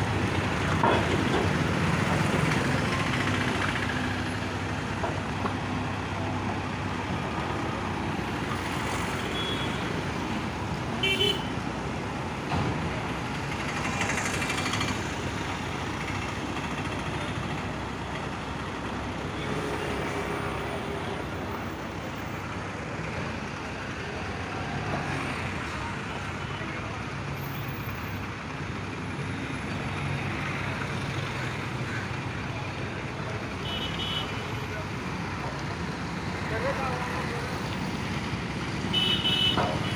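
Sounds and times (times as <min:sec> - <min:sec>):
passing highway traffic: 0:00.0 - 0:39.9
road roller diesel engine running: 0:00.0 - 0:39.9
vehicle horn toot: 0:11.0 - 0:11.5, 0:38.9 - 0:39.9.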